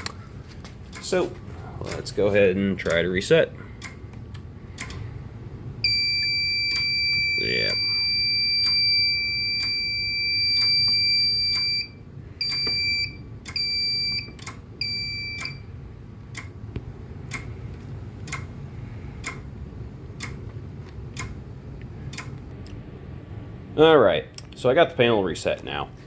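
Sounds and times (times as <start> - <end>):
sharp clicking: 1.8 - 3.1, 3.8 - 5.1, 16.3 - 17.6, 18.2 - 18.6, 19.2 - 19.5, 20.2 - 21.4, 22.0 - 22.8
fire alarm high tone: 5.8 - 15.7
short alarm beeps: 5.8 - 15.7.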